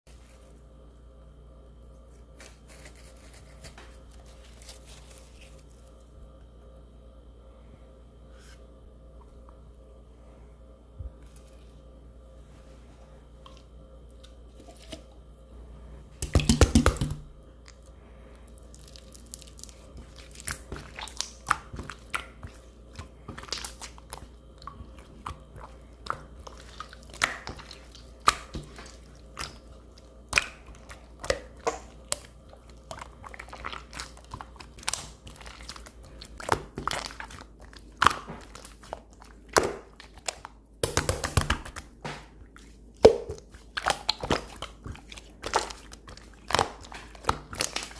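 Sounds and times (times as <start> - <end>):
slime squelching: 16.1 - 47.9.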